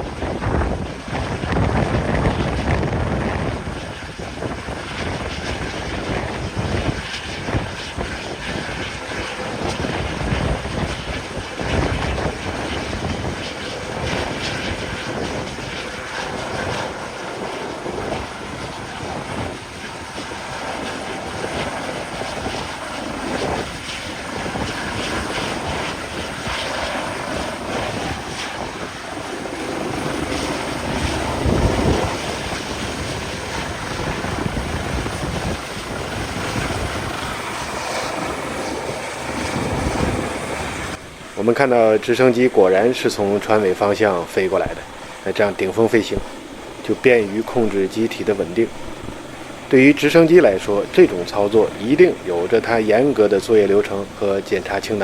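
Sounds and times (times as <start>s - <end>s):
helicopter flying close: 0.0s - 55.0s.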